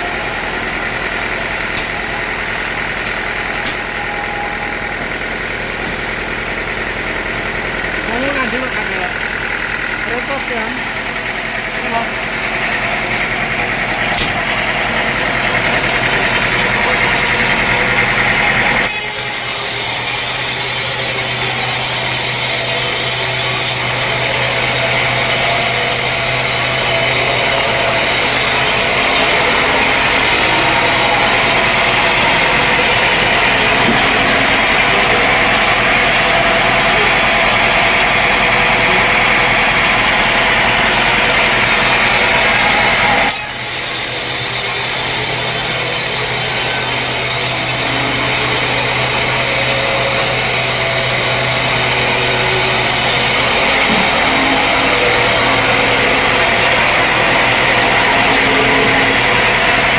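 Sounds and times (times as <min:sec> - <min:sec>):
sawmill machinery humming: 0:00.0 - 0:59.9.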